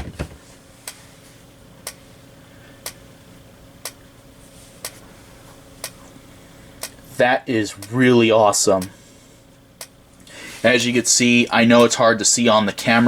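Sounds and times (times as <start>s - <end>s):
faint steady hum: 0.0s - 13.0s
sharp strobe clicks: 7.8s - 8.0s.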